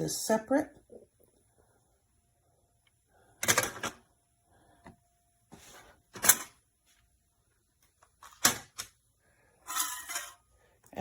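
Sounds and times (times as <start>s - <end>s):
plastic parts clattering: 3.4s - 4.0s, 8.2s - 9.0s, 9.6s - 10.4s.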